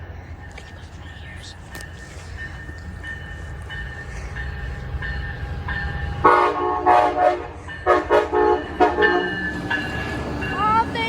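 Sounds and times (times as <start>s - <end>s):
train rumble: 0.0s - 11.0s
train air horn blasts: 4.7s - 9.4s.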